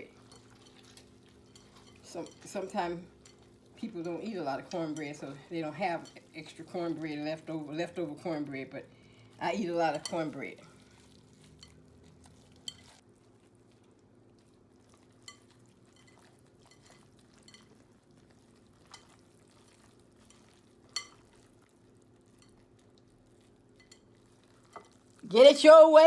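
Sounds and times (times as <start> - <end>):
low steady hum: 0.0 - 12.8.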